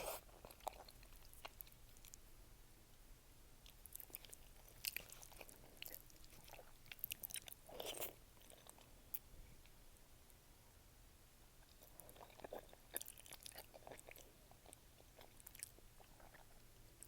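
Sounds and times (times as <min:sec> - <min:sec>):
wet chewing clicks and smacks: 0:00.3 - 0:02.2, 0:03.6 - 0:09.3, 0:11.6 - 0:17.0.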